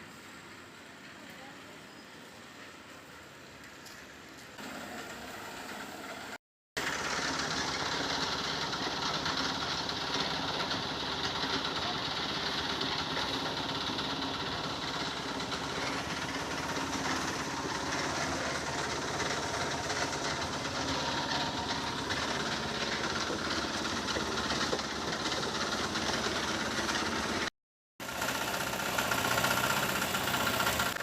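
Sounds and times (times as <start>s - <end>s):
concrete mixer engine running: 4.6s - 31.0s.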